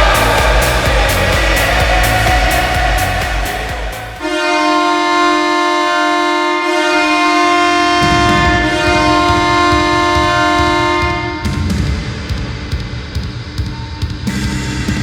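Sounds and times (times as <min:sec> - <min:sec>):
low rumble: 0:00.0 - 0:04.4
goal horn blast: 0:00.0 - 0:11.7.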